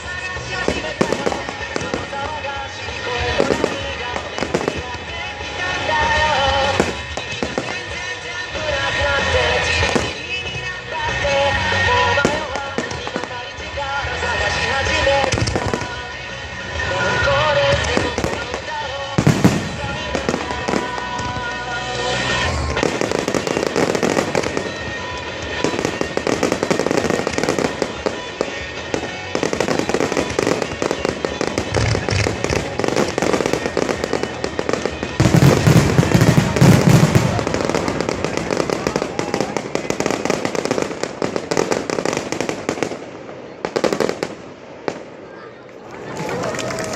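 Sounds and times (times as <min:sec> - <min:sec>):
fireworks crackling and popping: 0:00.0 - 0:46.9
deep firework booms: 0:17.7 - 0:24.9, 0:25.6 - 0:45.1.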